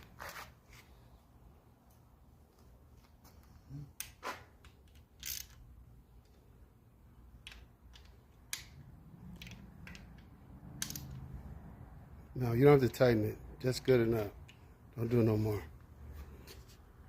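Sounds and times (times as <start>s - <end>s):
metallic clicks of tools and bolts: 4.0s - 6.5s, 7.4s - 11.4s.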